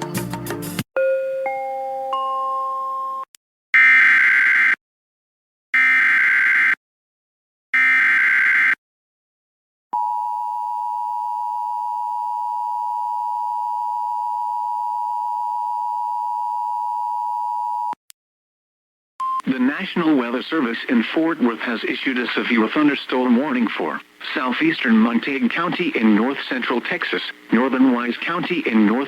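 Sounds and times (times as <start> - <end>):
digital header data bursts: 19.5 - 29.0.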